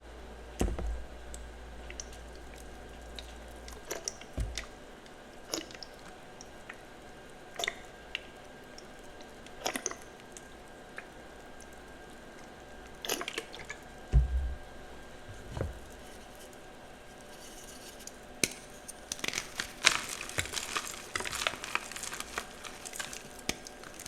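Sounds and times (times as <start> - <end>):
low hum: 14.1 - 16.0.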